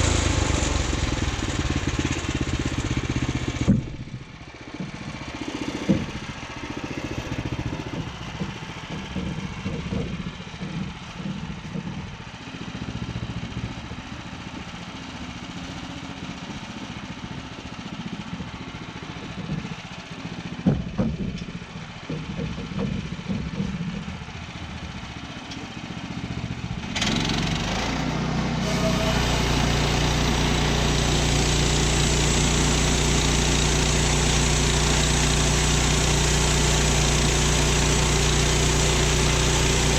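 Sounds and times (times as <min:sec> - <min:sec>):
gas engine idling and revving: 0:00.0 - 0:39.9
knocks: 0:03.6 - 0:04.1, 0:05.8 - 0:06.3, 0:07.7 - 0:12.1, 0:20.6 - 0:21.5, 0:22.1 - 0:24.2.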